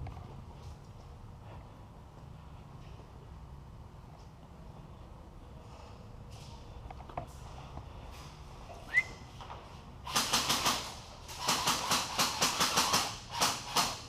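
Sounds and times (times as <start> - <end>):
airsoft guns firing full auto: 10.1 - 14.0.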